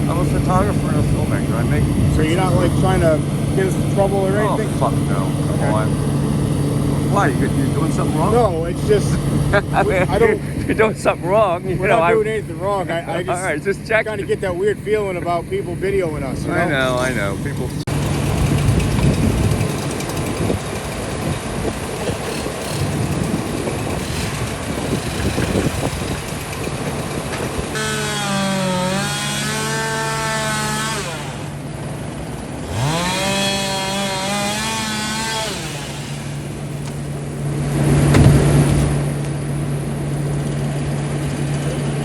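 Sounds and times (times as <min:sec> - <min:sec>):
chainsaw cutting and revving: 0:00.0 - 0:10.8, 0:16.4 - 0:39.3
engine drone: 0:00.0 - 0:42.0.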